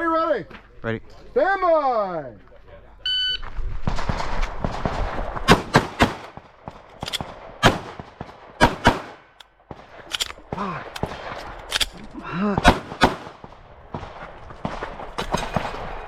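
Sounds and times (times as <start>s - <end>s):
pistol shots: 5.5s - 6.4s, 7.0s - 9.4s, 12.6s - 13.4s.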